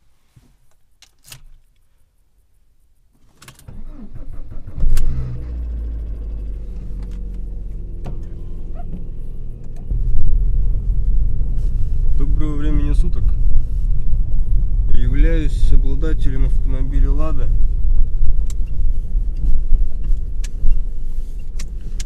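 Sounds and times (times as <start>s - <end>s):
car engine starting and running: 3.3s - 22.0s.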